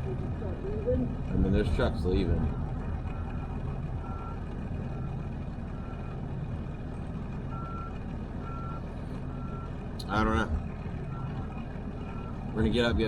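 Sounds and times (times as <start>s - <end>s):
idling engine rumble: 0.0s - 13.0s
truck reversing alarm beeping: 2.4s - 6.3s, 7.5s - 9.8s, 11.0s - 12.6s.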